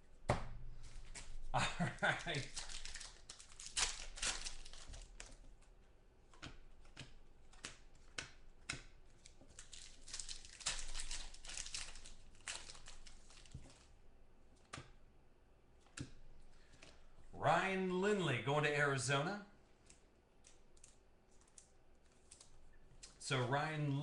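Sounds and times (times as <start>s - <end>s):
cards handled by hand: 0.3s - 13.9s, 19.8s - 23.2s
wrapper crinkling and tearing: 1.1s - 5.5s, 9.2s - 13.9s.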